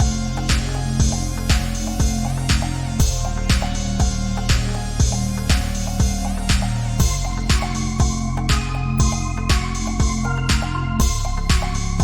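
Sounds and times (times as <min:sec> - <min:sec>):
electronic music drum beat: 0:00.0 - 0:12.0
sustained bass line: 0:00.0 - 0:12.0.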